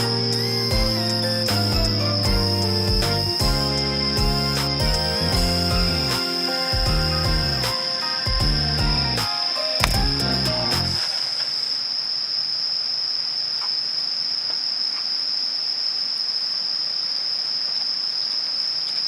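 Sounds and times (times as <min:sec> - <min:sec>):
background music: 0:00.0 - 0:11.0
crickets chirring: 0:00.0 - 0:19.0.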